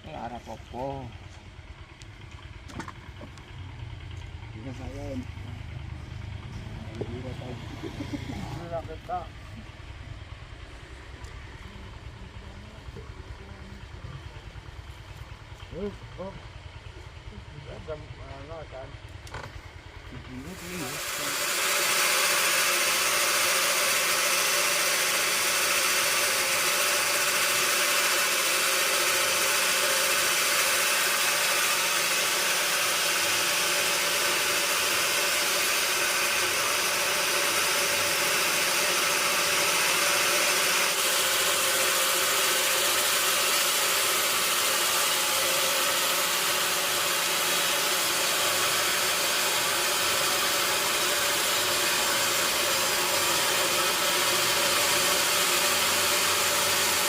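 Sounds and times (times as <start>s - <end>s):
machinery hum: 0.0s - 57.0s
sawmill machinery hiss: 20.0s - 57.0s.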